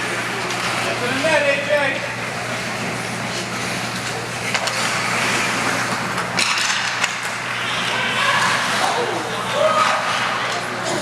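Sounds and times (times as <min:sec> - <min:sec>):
skates scraping ice: 0:02.5 - 0:11.0
sticks and puck clacking: 0:04.0 - 0:11.0.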